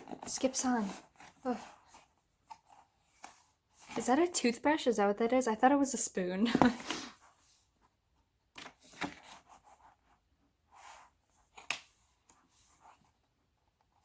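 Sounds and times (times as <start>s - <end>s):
book pages turning: 0.0s - 4.1s, 8.5s - 10.0s, 10.8s - 14.0s.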